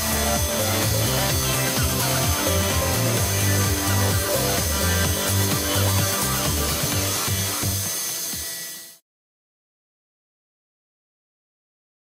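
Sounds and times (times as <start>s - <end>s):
electronic music with steady beat: 0.0s - 8.5s.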